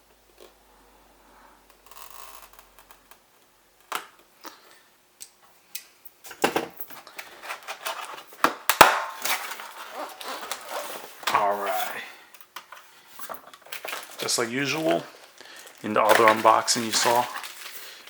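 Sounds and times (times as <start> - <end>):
packaging rustling: 6.9 - 18.0.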